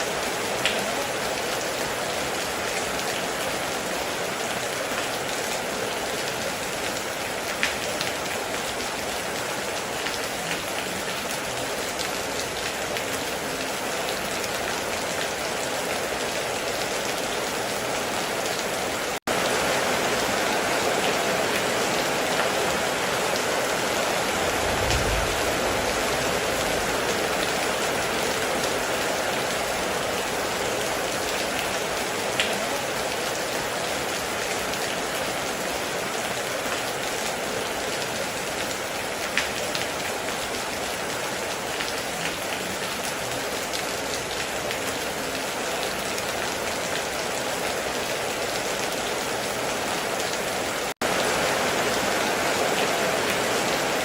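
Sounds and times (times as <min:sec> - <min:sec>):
heavy rain: 0:00.0 - 0:54.0
low rumble: 0:24.3 - 0:27.3.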